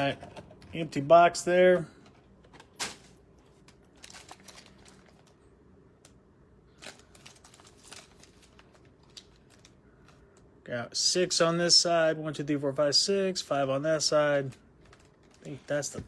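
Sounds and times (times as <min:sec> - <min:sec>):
foil packs crinkling: 0:02.5 - 0:05.4, 0:06.7 - 0:10.4, 0:14.0 - 0:16.0.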